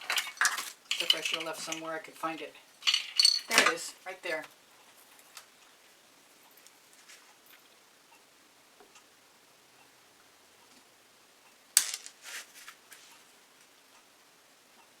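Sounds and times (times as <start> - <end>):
small hard objects clattering: 0.0 - 4.4.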